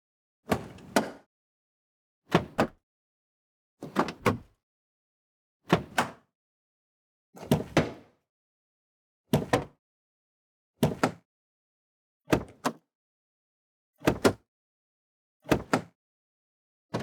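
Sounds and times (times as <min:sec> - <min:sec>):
car door handle and latch clunk: 0:04.0 - 0:04.5.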